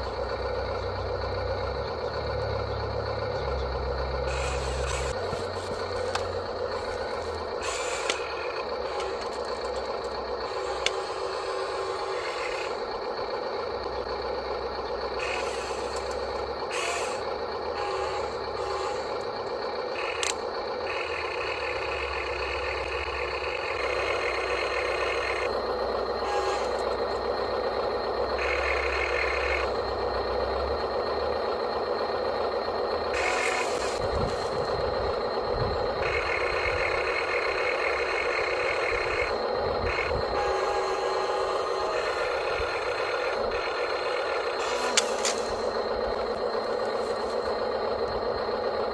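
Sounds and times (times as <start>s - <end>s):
high-pitched whirring: 0.0s - 48.9s
small electric motors whining: 2.6s - 48.9s.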